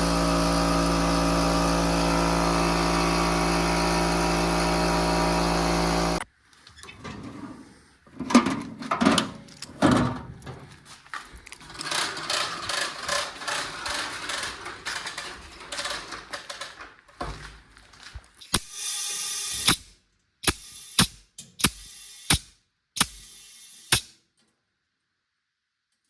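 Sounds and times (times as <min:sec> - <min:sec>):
compressed air hissing: 0:00.0 - 0:06.2
hose reel ratchet clicking: 0:00.0 - 0:06.2, 0:11.8 - 0:16.8, 0:18.4 - 0:24.2.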